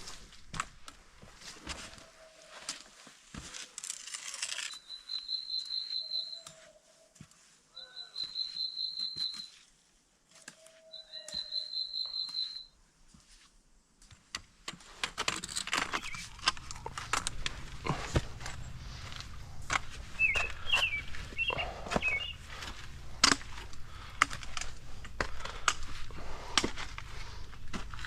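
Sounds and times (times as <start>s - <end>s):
footsteps crunching on trail: 0.0s - 9.7s, 10.3s - 28.0s
songbird rapid trill: 4.7s - 6.5s, 7.8s - 9.5s, 10.9s - 12.7s, 20.0s - 22.6s.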